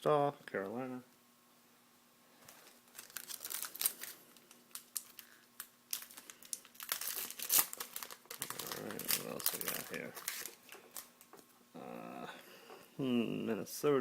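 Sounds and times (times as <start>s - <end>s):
card pack wrapper crinkling and tearing: 2.5s - 11.3s.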